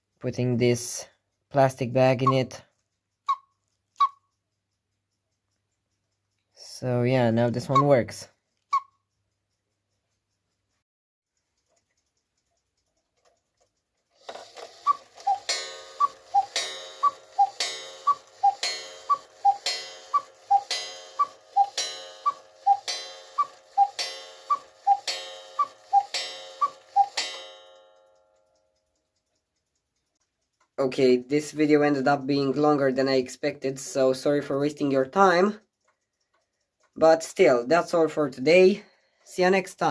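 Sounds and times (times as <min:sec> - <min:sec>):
cuckoo clock whistle: 0:03.2 - 0:04.4, 0:08.7 - 0:09.0, 0:14.6 - 0:27.6.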